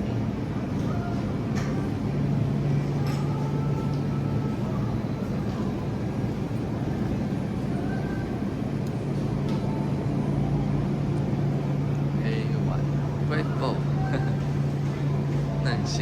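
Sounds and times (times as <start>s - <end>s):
refrigeration and ventilation hum: 0.0s - 16.0s.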